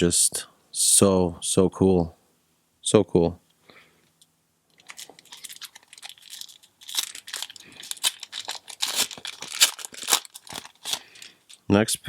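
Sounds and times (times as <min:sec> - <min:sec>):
foil wrapper crinkling and tearing: 0:04.8 - 0:11.6.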